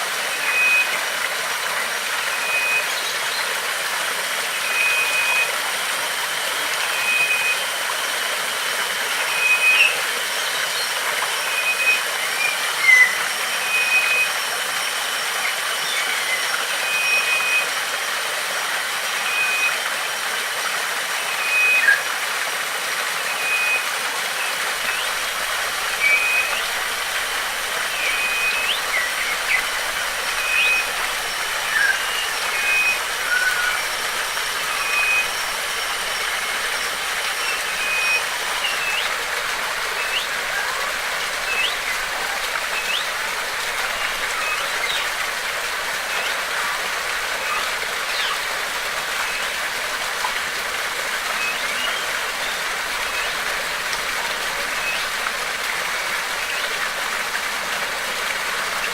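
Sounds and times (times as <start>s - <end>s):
waterfall rushing: 0.0s - 58.9s
bird chirps: 51.4s - 53.4s.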